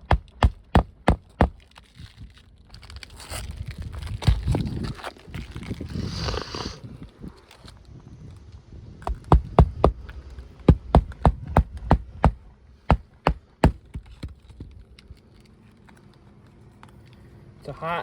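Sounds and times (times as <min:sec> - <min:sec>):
hammer striking nails into shingle: 0:00.0 - 0:01.6, 0:09.0 - 0:14.6.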